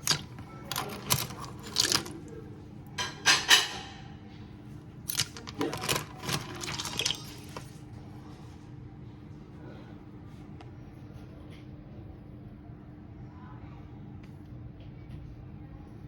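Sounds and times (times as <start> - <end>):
water splashing and sloshing: 0.0 - 2.2, 5.1 - 7.9.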